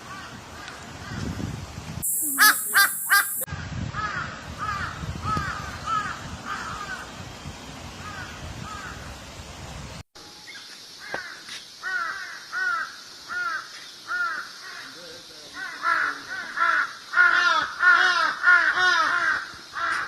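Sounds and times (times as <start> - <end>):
crows cawing: 2.4 - 3.4, 4.0 - 7.1, 11.0 - 15.0, 15.6 - 20.0.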